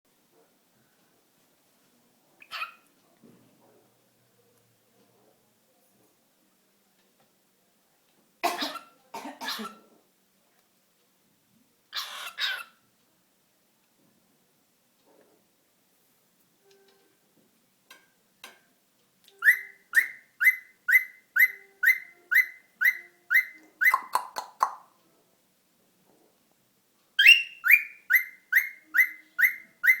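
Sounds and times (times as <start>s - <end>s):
cockatiel calling: 2.4s - 2.8s, 11.9s - 12.8s, 19.4s - 24.3s, 27.2s - 30.0s.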